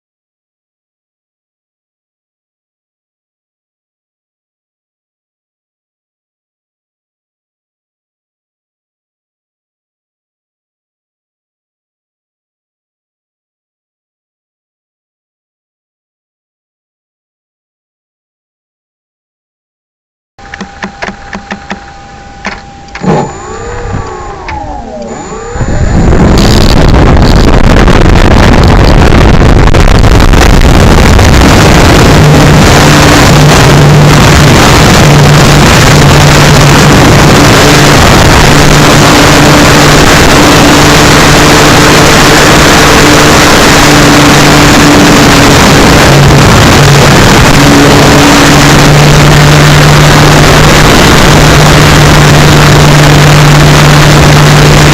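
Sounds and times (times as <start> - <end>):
clicks: 20.4 - 27.4
faint wavering tones: 20.4 - 27.8
model plane motor and propeller: 20.4 - 28.9, 30.8 - 54.9
rushing air noise: 22.9 - 54.9.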